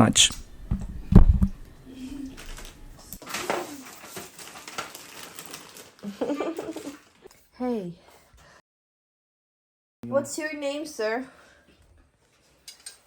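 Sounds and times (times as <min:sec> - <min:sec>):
child cooing and babbling: 0:01.9 - 0:02.4.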